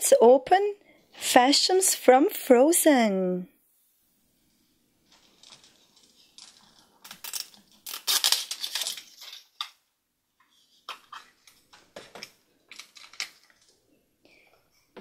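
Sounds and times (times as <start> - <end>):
plastic packaging crinkling: 5.1 - 9.7, 11.0 - 13.8.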